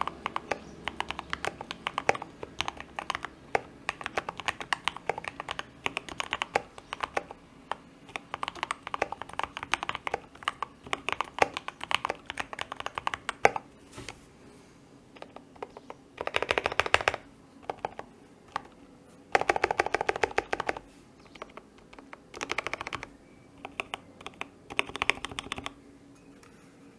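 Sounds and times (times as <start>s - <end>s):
mechanical keyboard typing: 0.0s - 13.7s, 15.2s - 25.8s.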